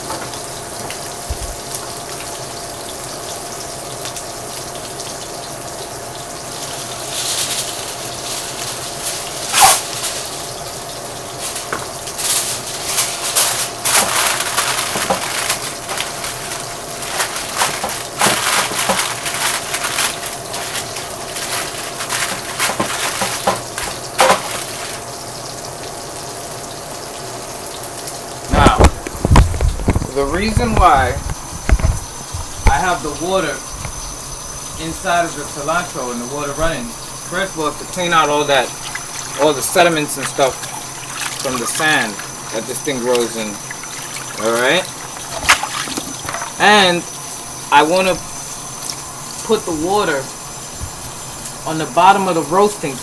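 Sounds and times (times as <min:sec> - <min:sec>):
kitchen tap running: 0:00.0 - 0:52.9
clatters and knocks of handling: 0:11.4 - 0:25.0.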